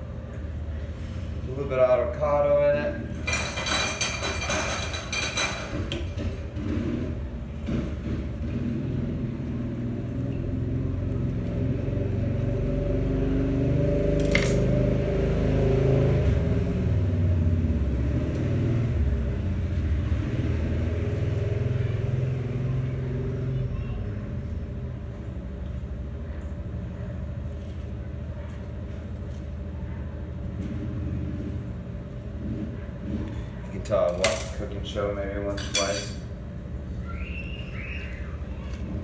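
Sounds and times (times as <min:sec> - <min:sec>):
dishes and utensils clinking: 0:03.2 - 0:06.1, 0:34.1 - 0:34.6, 0:35.5 - 0:36.3.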